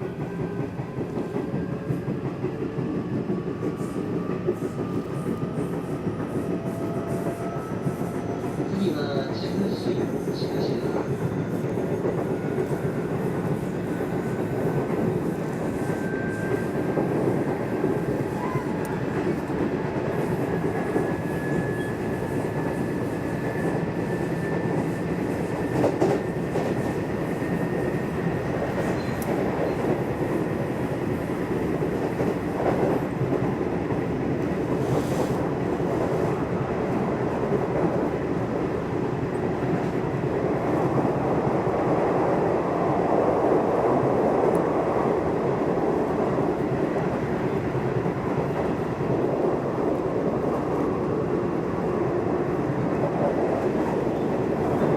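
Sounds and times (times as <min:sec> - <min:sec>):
train wheels rumbling on rail: 0:00.0 - 0:54.9
rail joint clicks: 0:28.6 - 0:30.0.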